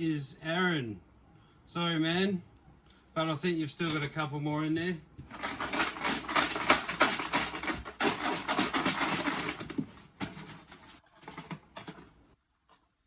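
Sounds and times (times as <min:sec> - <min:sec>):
tokens rattling in a container: 0:05.3 - 0:09.7.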